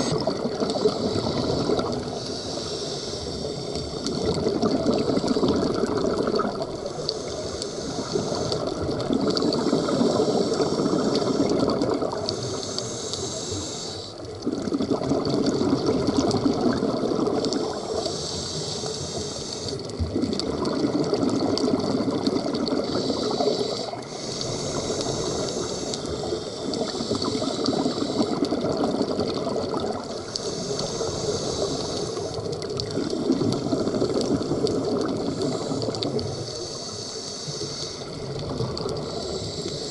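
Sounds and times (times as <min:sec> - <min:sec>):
regulator hissing inhalation: 0:00.0 - 0:04.1, 0:06.8 - 0:08.8, 0:09.5 - 0:14.3, 0:17.7 - 0:19.9, 0:22.7 - 0:28.7, 0:30.1 - 0:32.5, 0:35.0 - 0:38.3, 0:38.9 - 0:39.9
bubbling exhaled air: 0:00.0 - 0:39.9.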